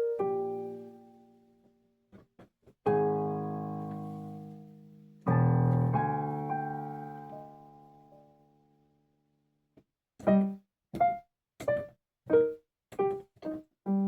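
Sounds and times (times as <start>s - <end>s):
piano chords ringing out: 2.9s - 8.5s.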